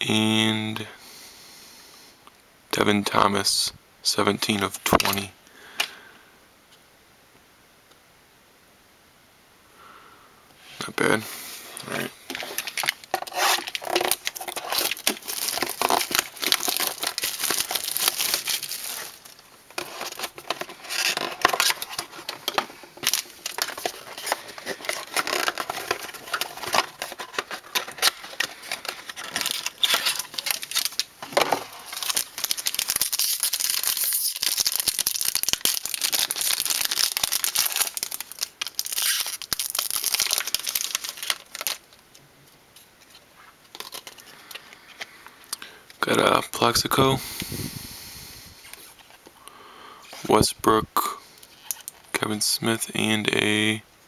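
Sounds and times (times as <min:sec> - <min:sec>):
wrapper tearing and crinkling: 0:12.3 - 0:42.0, 0:43.7 - 0:44.3.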